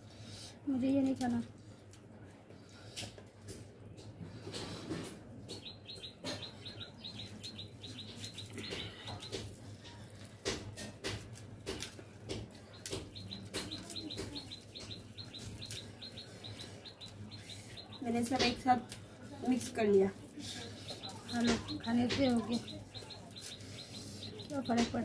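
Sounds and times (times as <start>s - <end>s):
small bird chirping: 5.5s - 9.5s, 12.6s - 18.6s, 20.7s - 25.0s
sharp clicks and knocks: 10.2s - 16.6s.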